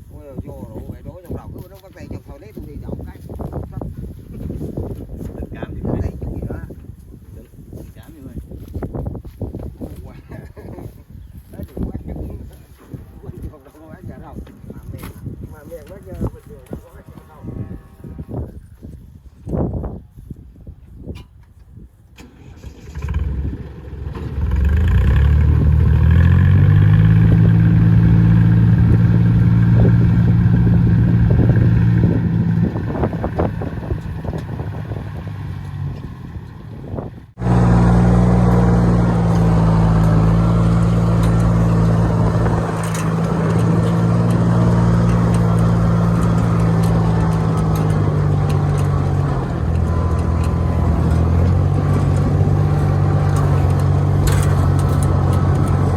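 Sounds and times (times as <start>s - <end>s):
small engine running: 22.2s - 36.0s, 37.4s - 55.9s.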